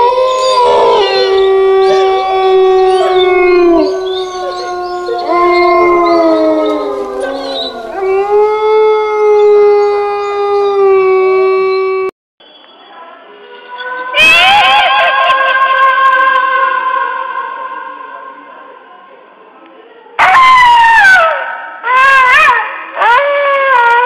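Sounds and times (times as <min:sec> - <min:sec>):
wolves howling in chorus: 0:00.0 - 0:12.1.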